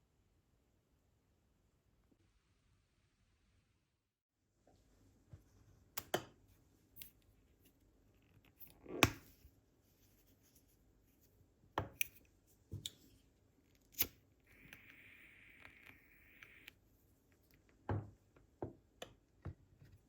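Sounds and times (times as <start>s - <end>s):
steady hiss: 14.4s - 16.7s.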